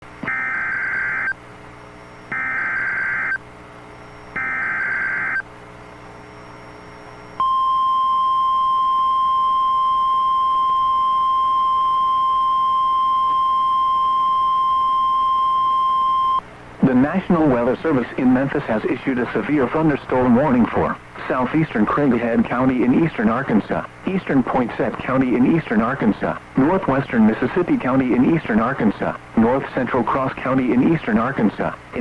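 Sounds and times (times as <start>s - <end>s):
steady warning alarm tone: 0.2s - 1.4s, 2.2s - 3.4s, 4.1s - 5.4s
screeching data tone bursts: 2.3s - 3.4s, 4.3s - 5.4s.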